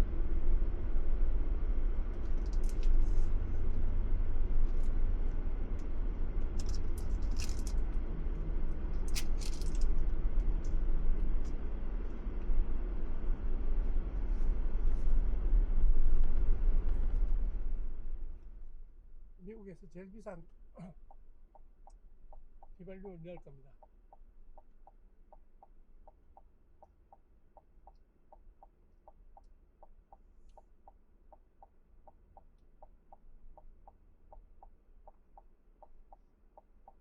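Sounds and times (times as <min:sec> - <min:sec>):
car engine and tyres rumbling: 0:00.0 - 0:37.0
light rattles and clicks: 0:05.7 - 0:08.0, 0:08.9 - 0:11.6.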